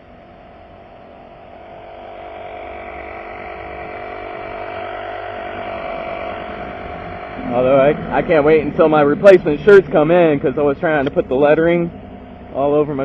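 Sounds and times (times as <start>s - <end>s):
mechanical whir: 0.0s - 13.0s.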